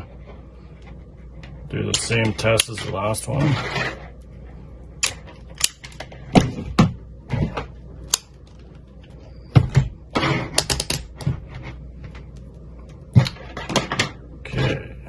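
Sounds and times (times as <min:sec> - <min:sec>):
wire stripper clicking and snapping: 0:05.0 - 0:06.1, 0:08.0 - 0:08.9.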